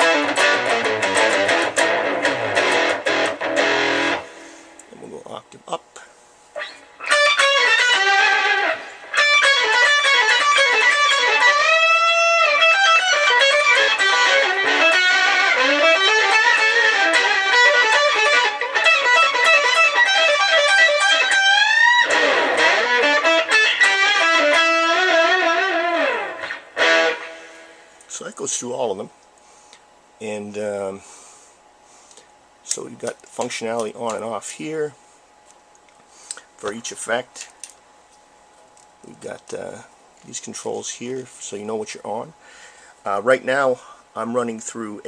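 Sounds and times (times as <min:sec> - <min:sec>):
electric guitar with pitch shifter: 0:00.0 - 0:04.9, 0:06.6 - 0:28.0.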